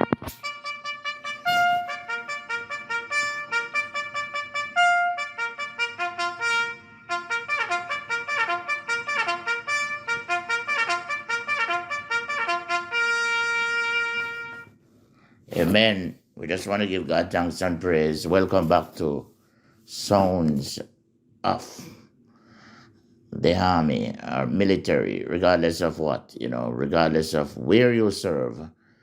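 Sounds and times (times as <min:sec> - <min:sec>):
trumpet fanfare: 0:00.0 - 0:14.8.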